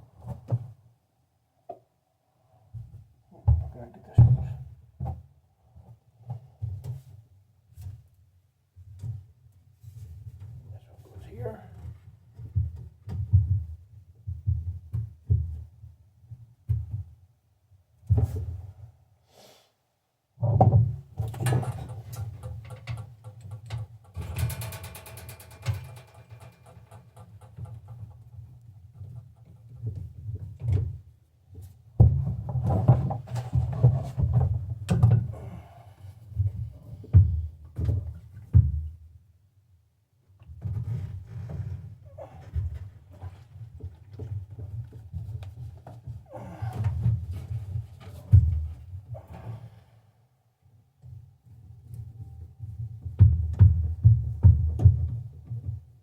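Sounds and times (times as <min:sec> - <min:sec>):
knocks and clunks of handling parts: 0:20.4 - 0:35.6, 0:36.3 - 0:39.0, 0:40.4 - 0:49.4, 0:51.8 - 0:55.8
rapid rattle of clicks: 0:21.6 - 0:28.2.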